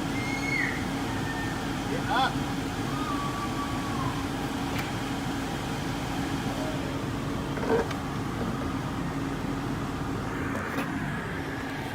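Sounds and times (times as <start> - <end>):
blower fan humming: 0.0 - 11.9.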